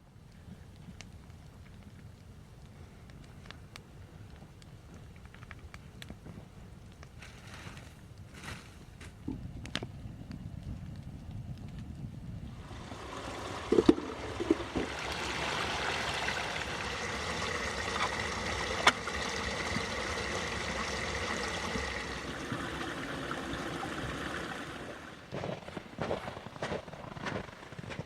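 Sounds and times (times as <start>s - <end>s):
water running: 12.6s - 26.2s.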